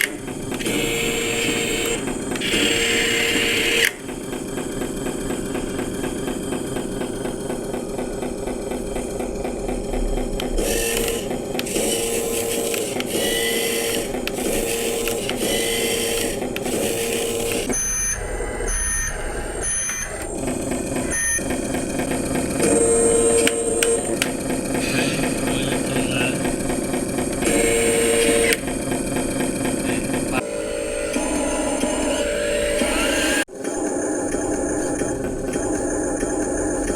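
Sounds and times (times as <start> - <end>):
electric motor whirring: 0.0 - 36.9
short electronic beeps: 17.7 - 20.2.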